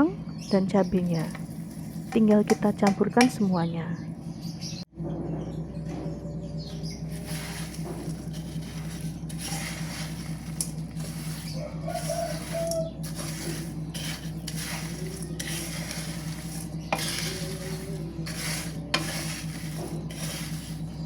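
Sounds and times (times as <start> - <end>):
steady low hum: 0.0 - 21.0
utensil scraping fried food: 0.9 - 2.7, 7.0 - 21.0.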